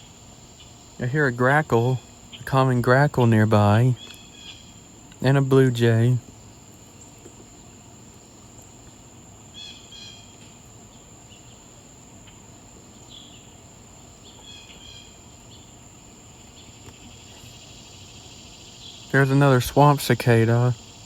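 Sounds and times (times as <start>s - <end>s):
cicada buzzing: 0.0s - 21.0s
insects trilling: 0.0s - 21.0s
short bird calls: 14.3s - 15.7s.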